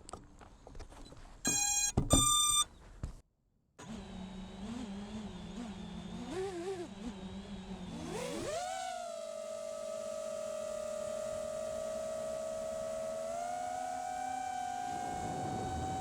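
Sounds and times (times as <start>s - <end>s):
electronic beeps: 1.5s - 2.7s
quadcopter motors humming: 3.9s - 16.0s.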